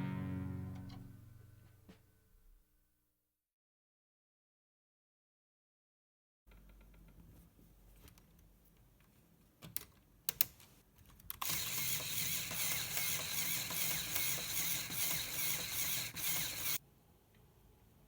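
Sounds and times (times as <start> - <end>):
plastic gear mechanism whirring: 11.4 - 16.8.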